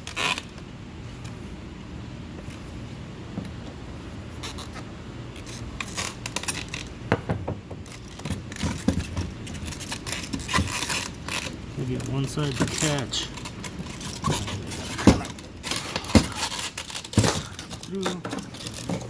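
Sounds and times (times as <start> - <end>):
low steady hum: 0.0 - 19.0
plastic and metal parts scraping: 5.4 - 7.0, 7.8 - 19.0.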